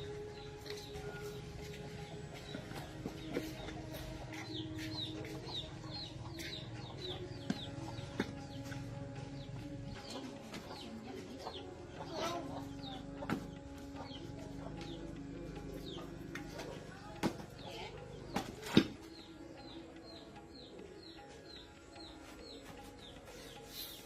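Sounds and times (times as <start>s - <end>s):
small birds chirping: 0.0s - 24.0s
chickens clucking: 0.3s - 24.0s.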